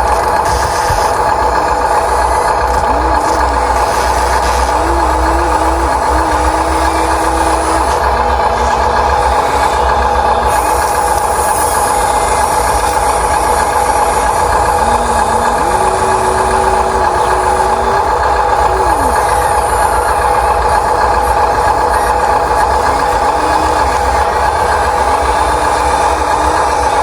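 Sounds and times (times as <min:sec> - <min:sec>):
toy electric motors whining: 0:00.0 - 0:27.0
tone sliding in pitch: 0:02.6 - 0:10.9, 0:13.9 - 0:27.0.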